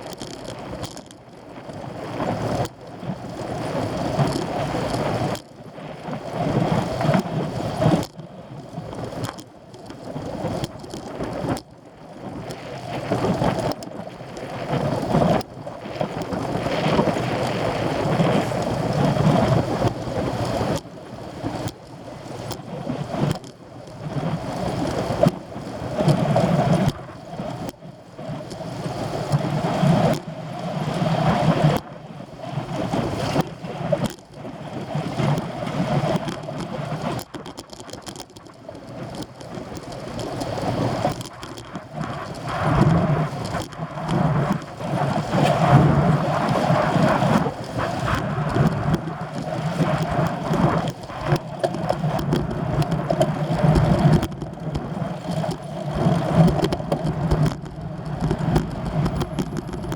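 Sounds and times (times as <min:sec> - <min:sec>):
wind buffeting microphone: 0:38.6 - 0:59.9.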